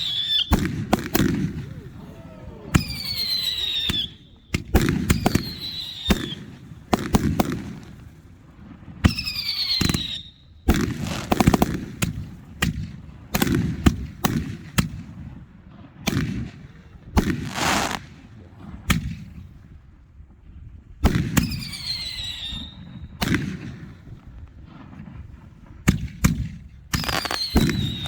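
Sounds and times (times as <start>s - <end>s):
fireworks crackling hiss: 0.0s - 8.4s, 10.8s - 11.7s, 17.4s - 18.0s, 27.0s - 28.0s
fireworks bangs: 0.0s - 12.8s, 17.2s - 18.0s, 21.1s - 28.0s
whistling fireworks: 0.0s - 15.2s, 17.1s - 19.3s, 21.1s - 28.0s.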